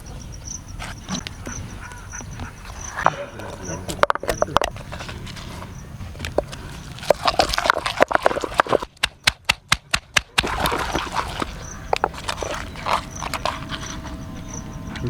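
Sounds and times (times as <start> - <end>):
pestle striking stone mortar: 7.0 - 11.0.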